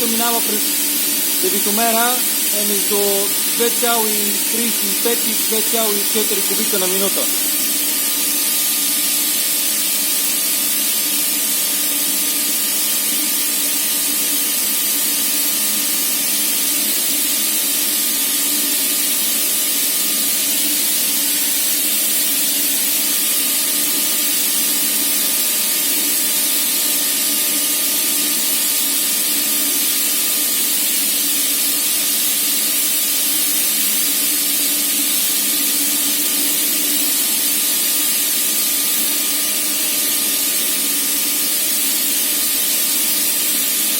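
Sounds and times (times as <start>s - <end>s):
compressed air hissing: 0.0s - 8.4s.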